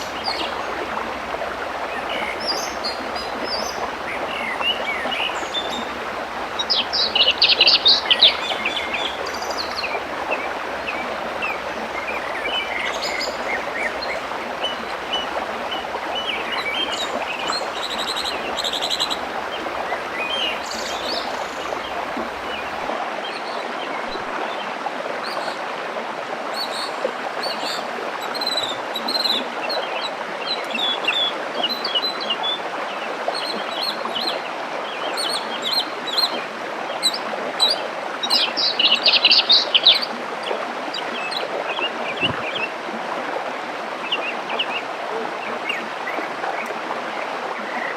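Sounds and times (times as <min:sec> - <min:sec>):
songbirds chirping: 0:00.0 - 0:22.9
waterfall rushing: 0:00.0 - 0:23.0.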